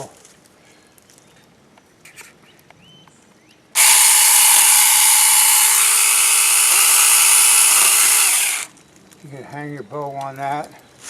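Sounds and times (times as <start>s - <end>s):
mini chainsaw cutting a limb: 3.8s - 8.7s.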